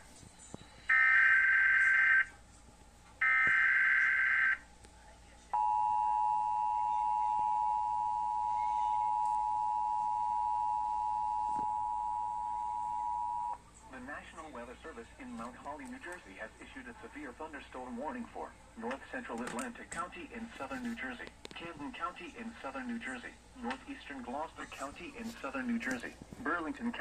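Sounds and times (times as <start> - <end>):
two-tone attention signal: 5.6 - 13.6.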